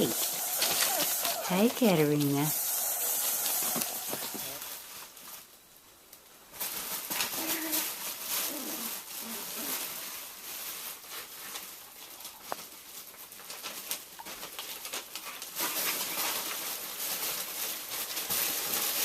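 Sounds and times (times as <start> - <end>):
puppies grunting softly: 0.0 - 2.0
puppies scuffling and scratching: 0.0 - 5.5, 6.5 - 19.0.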